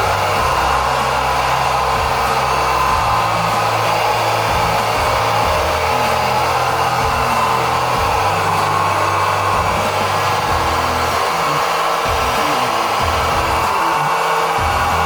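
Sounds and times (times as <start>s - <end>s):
hydraulic pump whirring: 0.0s - 15.0s
low shifting tones: 0.0s - 15.0s.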